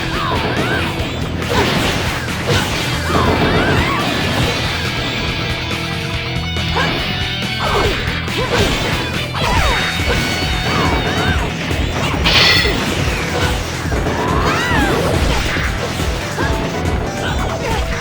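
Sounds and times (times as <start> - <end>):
crashes: 12.2 - 13.5
hits: 12.2 - 13.5.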